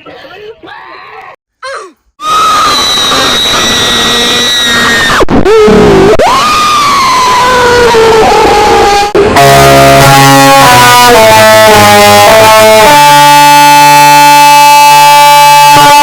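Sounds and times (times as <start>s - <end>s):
loud distorted music chords: 8.2s - 16.0s.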